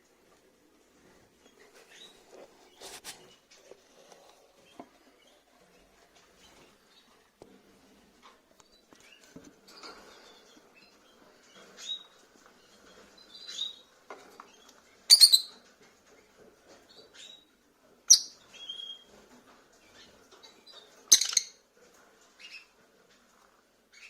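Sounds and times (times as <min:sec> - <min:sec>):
faint rustling and scratching: 0:00.0 - 0:24.0
lovebirds chirping: 0:08.6 - 0:15.6, 0:18.1 - 0:19.1.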